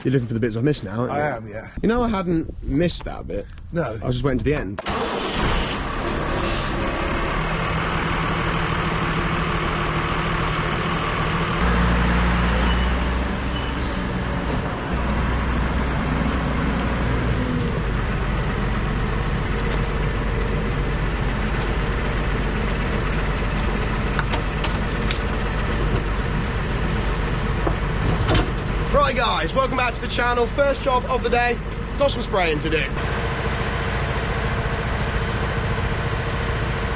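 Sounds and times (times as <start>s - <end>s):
farm machinery engine running: 4.8s - 36.9s.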